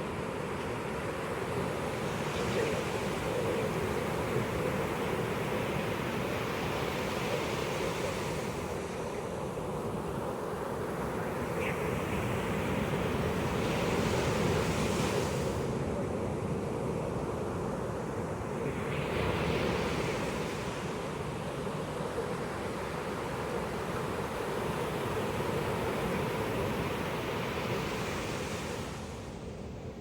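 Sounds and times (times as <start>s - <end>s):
waves breaking on a beach: 0.0s - 30.0s.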